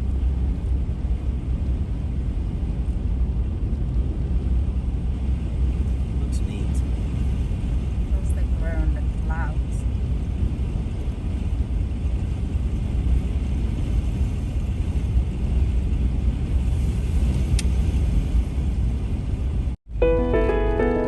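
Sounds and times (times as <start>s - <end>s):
car road noise rumble: 0.0s - 21.0s
soft piano music: 19.9s - 21.0s.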